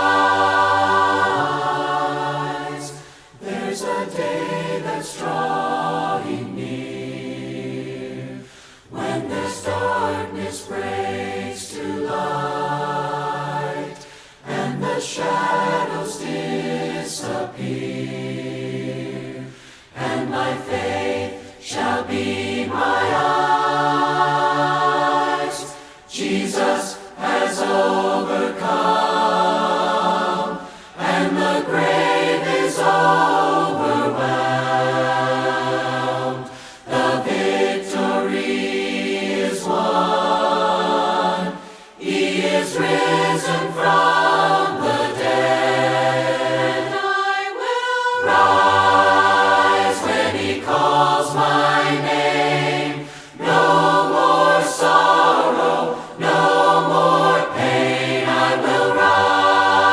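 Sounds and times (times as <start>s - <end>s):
group singing a hymn: 0.0s - 59.9s.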